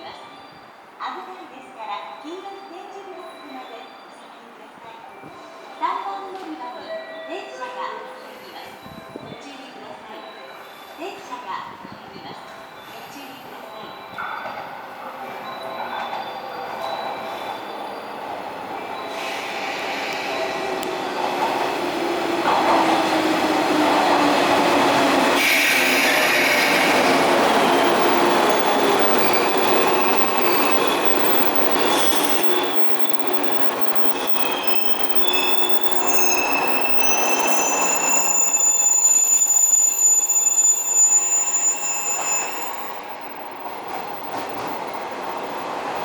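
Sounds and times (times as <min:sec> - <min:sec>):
train brakes squealing: 0:10.3 - 0:46.0
electric train running: 0:15.5 - 0:38.6.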